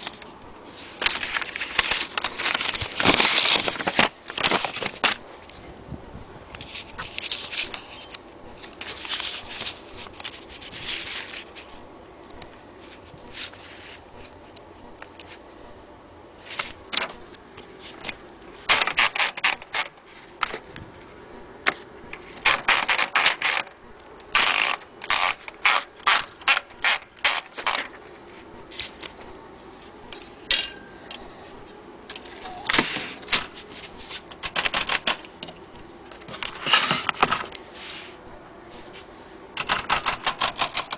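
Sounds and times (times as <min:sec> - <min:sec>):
longer typewriter mechanical sounds: 0:18.7 - 0:19.9, 0:22.4 - 0:23.7, 0:24.3 - 0:28.0, 0:34.3 - 0:35.5, 0:39.6 - 0:40.9.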